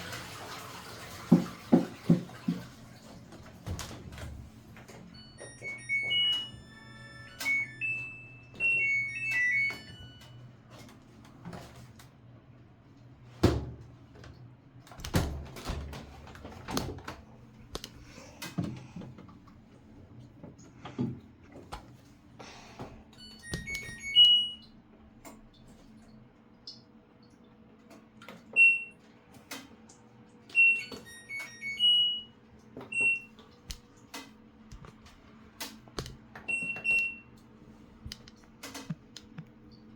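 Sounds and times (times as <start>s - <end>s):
washing machine dull clunks: 1.2s - 2.8s, 13.3s - 13.9s, 14.9s - 17.1s, 22.8s - 24.3s
washing machine beep melody: 4.5s - 10.8s, 23.0s - 24.9s, 28.5s - 29.0s, 30.5s - 33.4s, 36.4s - 37.4s.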